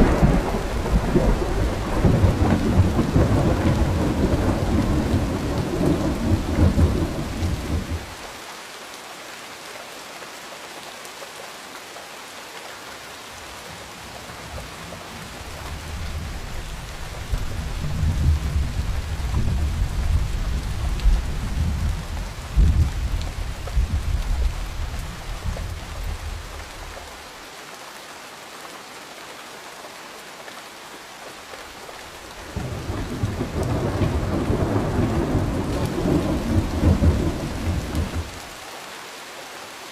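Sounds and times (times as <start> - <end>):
thunder rumbling: 0.0 - 8.2, 15.7 - 26.9, 32.5 - 38.4
steady rain: 0.0 - 39.9.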